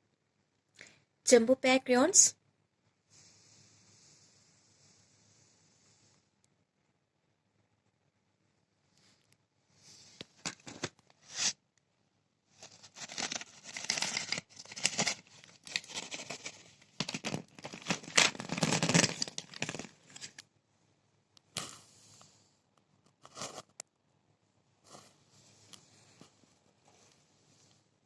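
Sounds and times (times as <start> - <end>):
packaging tearing and rustling: 10.4 - 11.5, 12.6 - 20.4.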